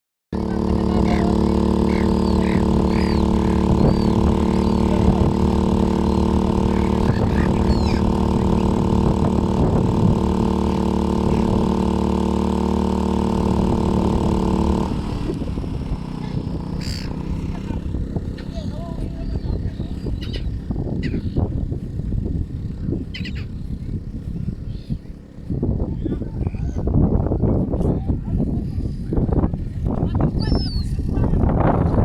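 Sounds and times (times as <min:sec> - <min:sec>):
engine hum: 0:00.3 - 0:32.0
high chirping calls: 0:00.8 - 0:08.8, 0:16.2 - 0:21.5, 0:23.0 - 0:25.2, 0:30.3 - 0:31.0.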